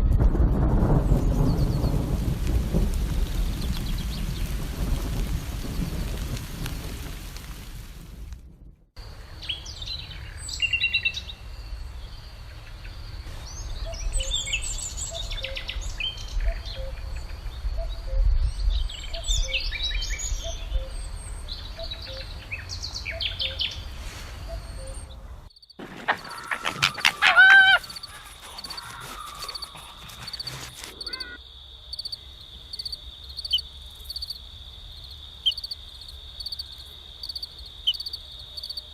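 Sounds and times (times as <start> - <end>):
low wind rumble: 0.0 - 31.1
birds chirping and trilling: 18.6 - 31.4.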